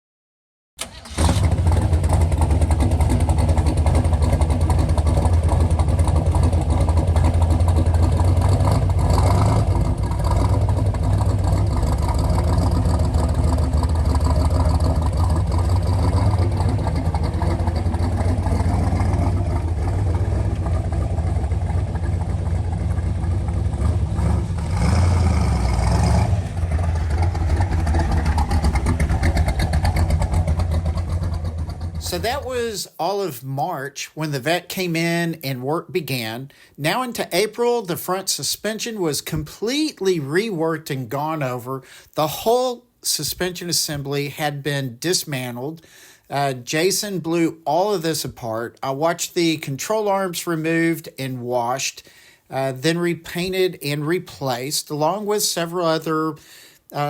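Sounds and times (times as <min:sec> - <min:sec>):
car engine running: 0:00.8 - 0:32.9.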